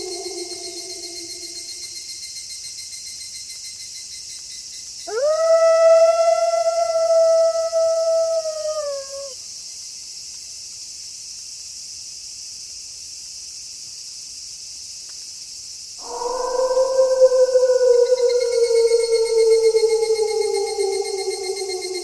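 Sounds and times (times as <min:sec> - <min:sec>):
wolf howling: 0:00.0 - 0:01.8, 0:05.1 - 0:09.4, 0:16.0 - 0:22.0
crickets chirping: 0:00.0 - 0:22.0.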